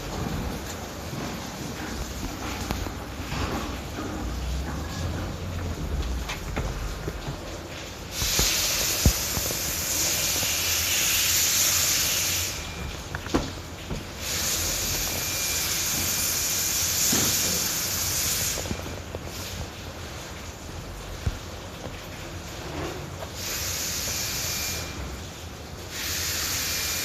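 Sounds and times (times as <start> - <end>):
compressed air hissing: 8.0 - 12.7, 14.2 - 19.6, 23.4 - 24.9, 25.9 - 27.0.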